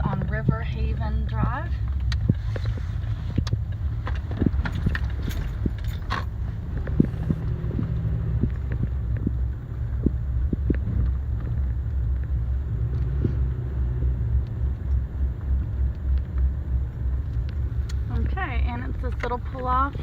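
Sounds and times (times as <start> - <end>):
engine and tyre rumble: 0.0 - 20.0
light knocks and rattles: 1.8 - 9.4.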